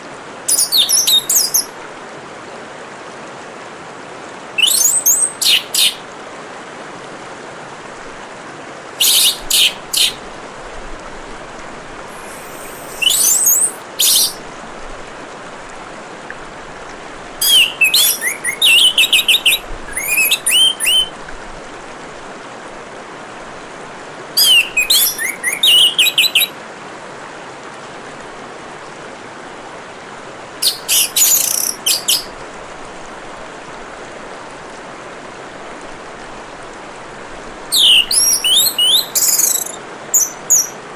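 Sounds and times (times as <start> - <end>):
trickle of running water: 0.0 - 40.9
thrush singing: 12.1 - 14.4, 17.4 - 21.1, 24.4 - 26.5, 37.7 - 40.8.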